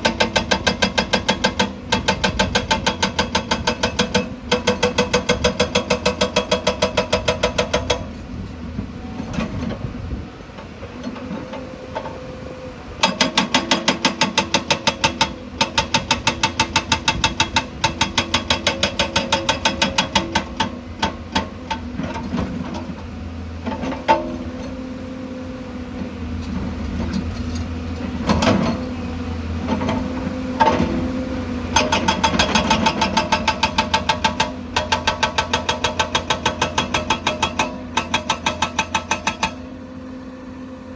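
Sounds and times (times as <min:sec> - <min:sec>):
hydraulic breaker hammering rock: 0:00.0 - 0:08.2, 0:13.0 - 0:23.0, 0:28.0 - 0:29.0, 0:29.6 - 0:39.8.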